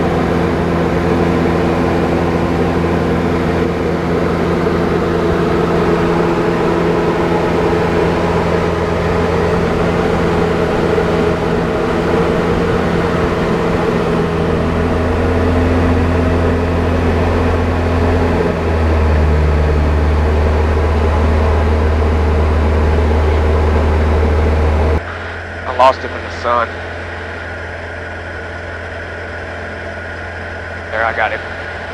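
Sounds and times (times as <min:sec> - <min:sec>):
aircraft engine drone: 0:00.0 - 0:31.9.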